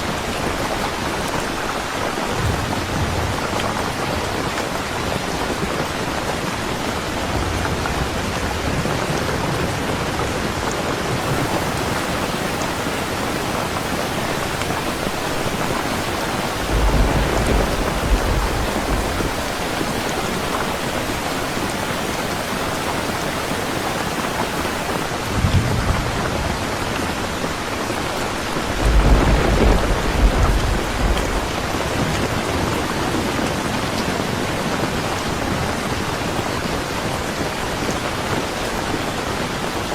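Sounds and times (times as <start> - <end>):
steady rain: 0.0 - 39.9
thunder rumbling: 11.2 - 27.4, 28.3 - 32.8.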